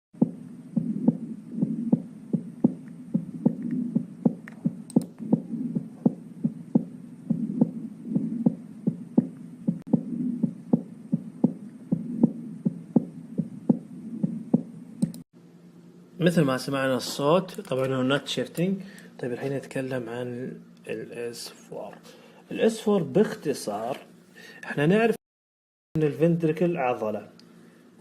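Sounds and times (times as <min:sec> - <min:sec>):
galloping heartbeat thuds: 0:00.2 - 0:14.7
low hum: 0:00.2 - 0:16.2.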